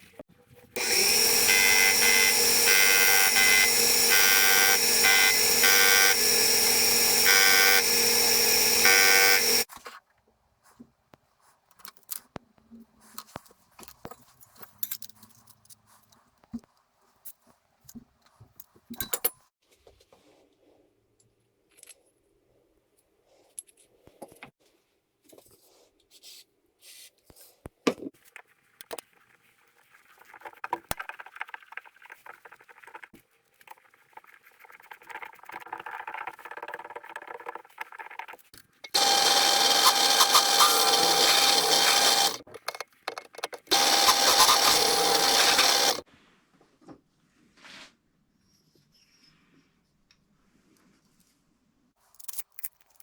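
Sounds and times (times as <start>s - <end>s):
power tool running loudly: 0.8s - 9.7s, 39.0s - 42.4s, 43.7s - 46.0s
metal parts and tools clicking: 13.9s - 15.9s, 38.2s - 46.0s, 52.1s - 53.0s.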